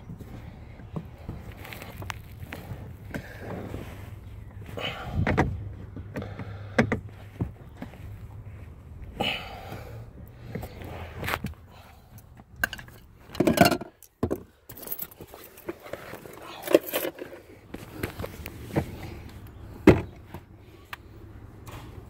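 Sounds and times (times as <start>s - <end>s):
tools and metal parts clicking: 12.6s - 17.4s.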